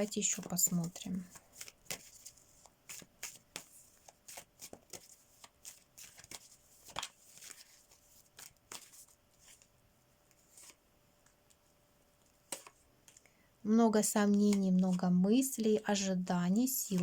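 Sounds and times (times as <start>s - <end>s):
cards being shuffled: 0.0s - 9.7s, 10.3s - 10.8s, 12.5s - 13.2s.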